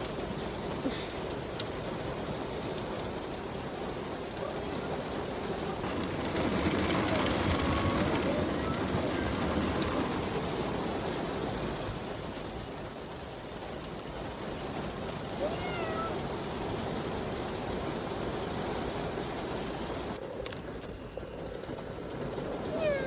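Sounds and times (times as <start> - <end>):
steady rushing noise: 3.2 - 23.0
cat meowing: 15.4 - 16.2, 22.7 - 23.0.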